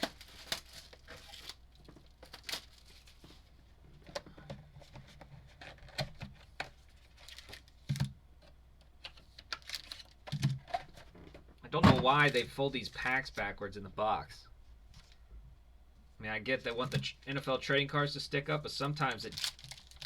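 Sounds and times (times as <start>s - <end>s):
cardboard tearing and crinkling: 0.0s - 3.2s, 19.2s - 20.0s.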